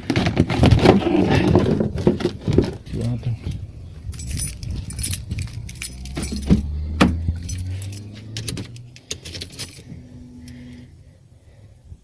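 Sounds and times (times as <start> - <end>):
low steady hum: 0.8 - 12.0
light metallic jingling: 4.0 - 10.8.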